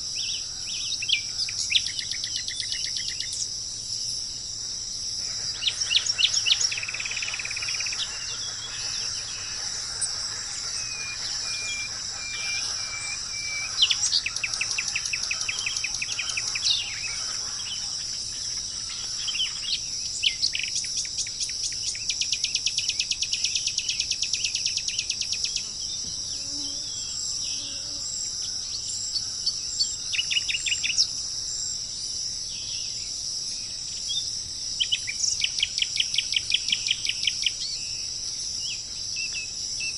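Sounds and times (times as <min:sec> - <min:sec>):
high insect drone: 0:00.0 - 0:39.9
fast chattering bird trills: 0:05.2 - 0:18.2
birds calling: 0:05.2 - 0:22.0
whistled bird notes: 0:05.2 - 0:25.6.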